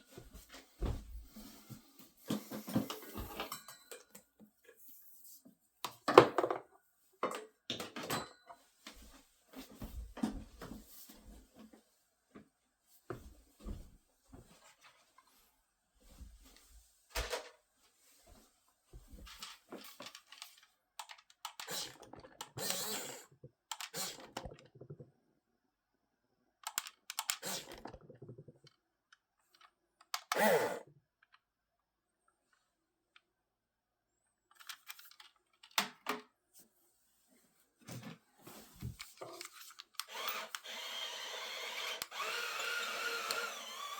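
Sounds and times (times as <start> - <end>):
toy tank motors and tracks rattling: 39.4 - 43.9.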